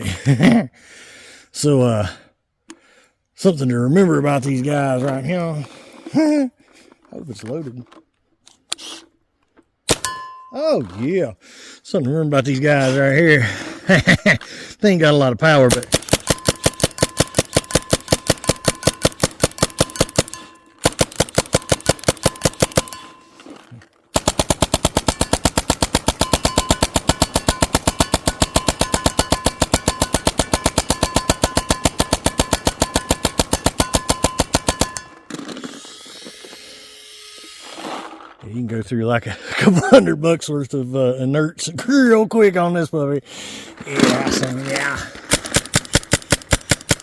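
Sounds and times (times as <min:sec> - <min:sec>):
launcher firing rapid bursts: 0:15.6 - 0:23.0, 0:24.1 - 0:35.1, 0:45.3 - 0:47.0.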